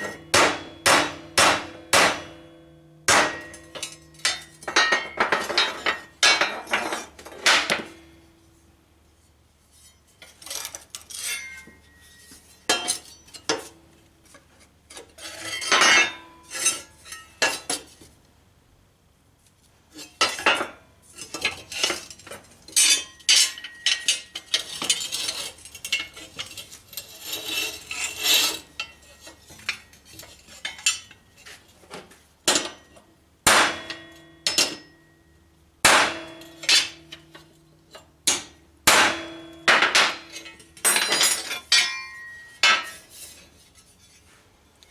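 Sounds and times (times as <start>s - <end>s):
hammer striking metal: 0.0s - 6.7s, 33.5s - 34.9s, 35.9s - 37.2s, 38.3s - 43.0s.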